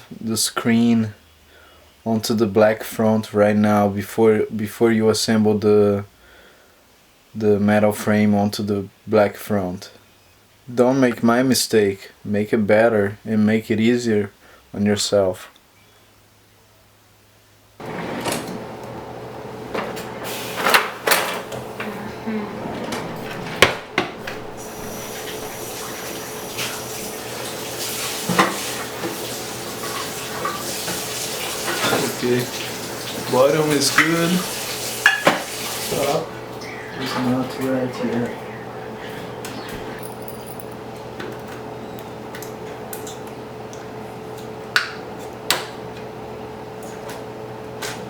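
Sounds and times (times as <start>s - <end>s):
steady hiss: 20.2s - 40.6s
steady hum: 36.0s - 43.6s.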